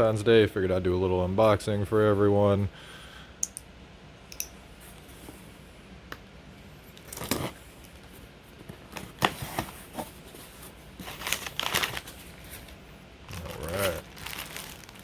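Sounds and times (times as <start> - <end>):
scraping tear: 13.3 - 15.0.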